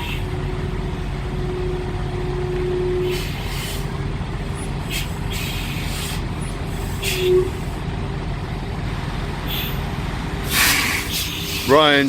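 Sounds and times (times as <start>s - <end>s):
diesel truck engine running: 0.0s - 12.0s
air brake hisses: 3.0s - 3.9s, 4.8s - 7.8s, 9.5s - 9.8s, 10.4s - 11.8s.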